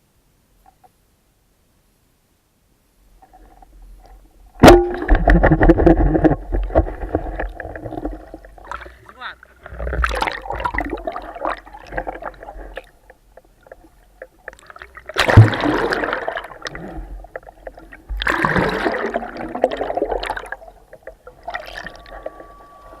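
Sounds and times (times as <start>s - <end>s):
water splashing and gurgling: 3.2s - 23.0s
sudden thump: 4.6s - 6.9s.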